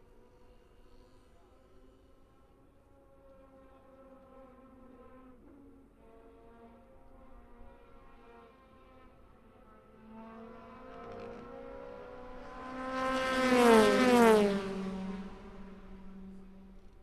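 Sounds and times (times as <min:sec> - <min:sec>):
race car passing by: 0:06.0 - 0:17.0.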